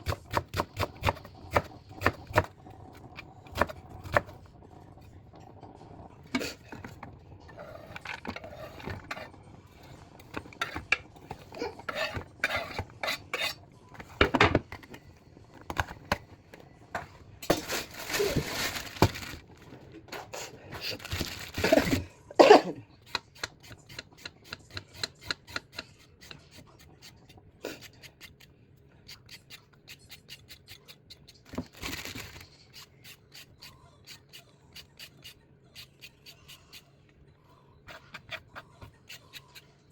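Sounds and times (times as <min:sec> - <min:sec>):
scraping noises: 0:17.0 - 0:22.0.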